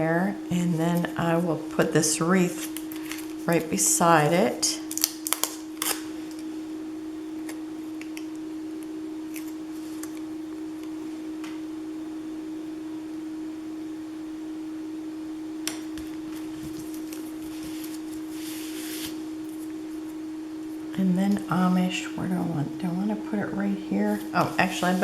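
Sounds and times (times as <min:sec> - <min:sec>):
steady low hum: 0:00.0 - 0:25.0
paper and stickers being handled: 0:16.3 - 0:19.6.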